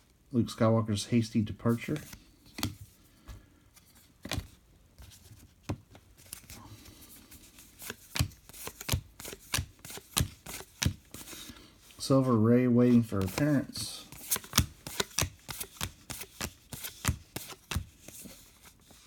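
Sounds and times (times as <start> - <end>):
cards snapping and sliding: 7.6 - 11.6, 13.1 - 18.3.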